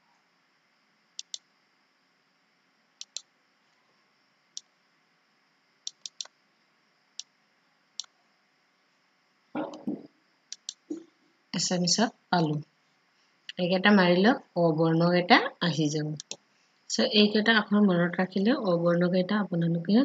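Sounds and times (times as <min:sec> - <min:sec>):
computer keyboard key clicks: 0:05.9 - 0:06.3, 0:10.5 - 0:10.8.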